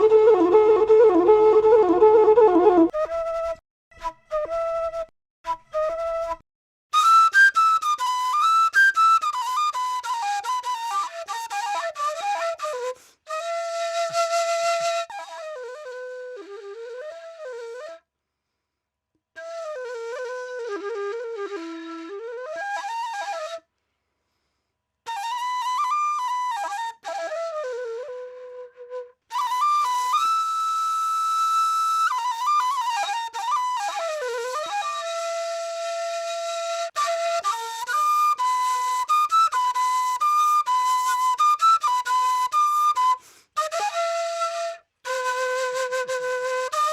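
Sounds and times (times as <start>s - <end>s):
end-blown flute melody: 25.7s - 46.9s.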